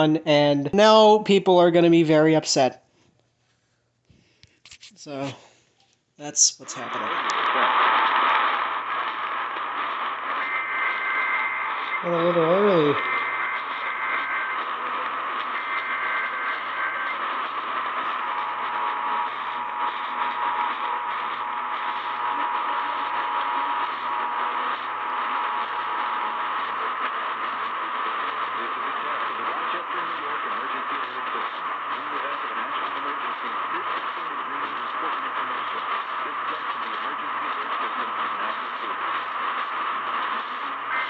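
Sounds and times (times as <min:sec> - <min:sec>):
radio hiss and static: 0:04.6 - 0:05.5, 0:06.2 - 0:41.0.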